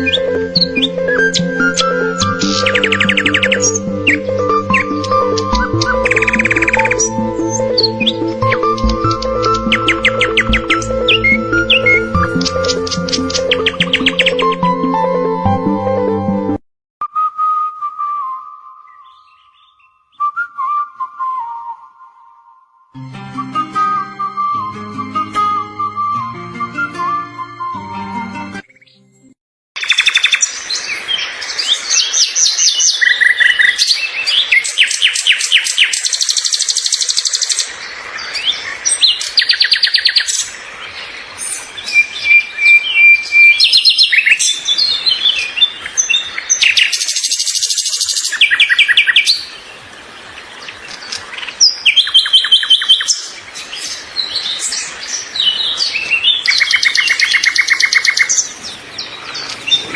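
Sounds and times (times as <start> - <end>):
fast bird trills: 0.0 - 14.4
small birds chirping and singing: 0.0 - 14.8, 18.8 - 20.3, 29.8 - 59.9.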